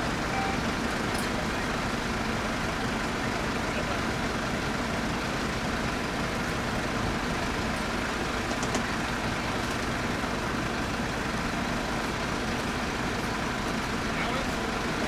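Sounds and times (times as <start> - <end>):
heavy vehicle engine idling: 0.0 - 15.0.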